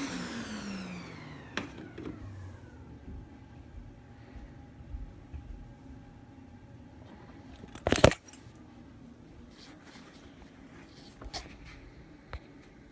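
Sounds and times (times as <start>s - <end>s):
faint steady hum: 0.0s - 12.9s.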